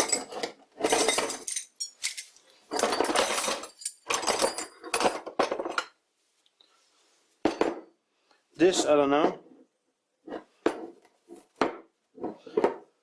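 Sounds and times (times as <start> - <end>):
steel parts clattering in a box: 0.0 - 5.8.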